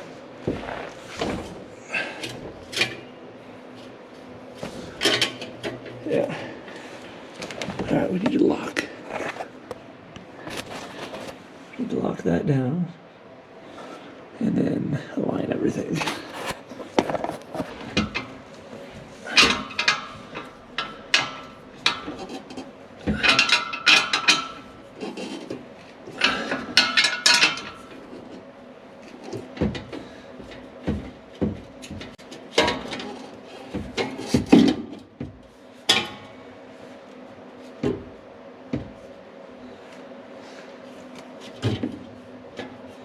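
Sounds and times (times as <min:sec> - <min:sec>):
metal clanks and rattles: 0:19.2 - 0:28.3, 0:29.2 - 0:35.0.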